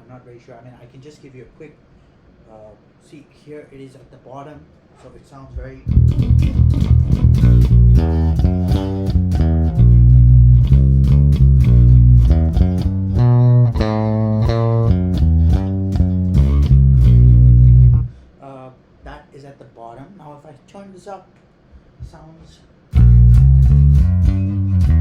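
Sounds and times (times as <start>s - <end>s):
electric bass plucked notes: 5.8s - 18.2s, 22.9s - 25.0s.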